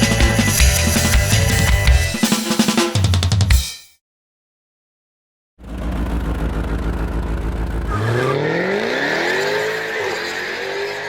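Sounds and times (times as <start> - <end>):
car engine accelerating: 5.6 - 11.0.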